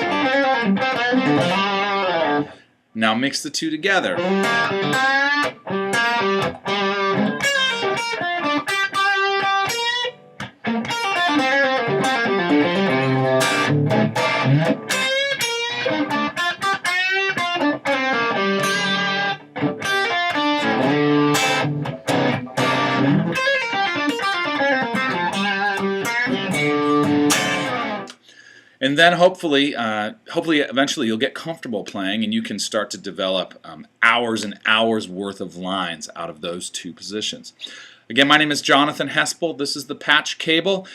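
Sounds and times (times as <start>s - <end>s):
electric guitar blues lines: 0.0s - 28.3s.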